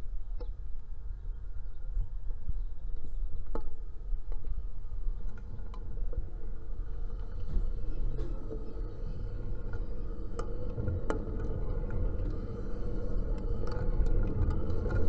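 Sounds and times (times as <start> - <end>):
attic fan rumbling: 4.8 - 15.0.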